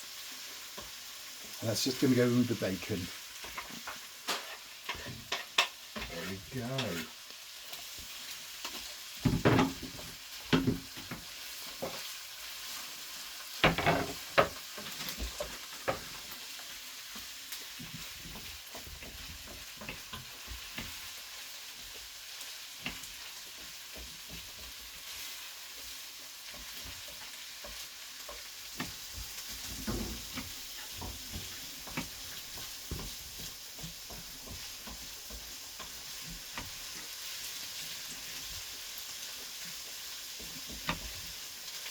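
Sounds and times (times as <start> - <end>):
food sizzling in oil: 0.0 - 41.9
utensil scraping a pan: 3.4 - 7.2.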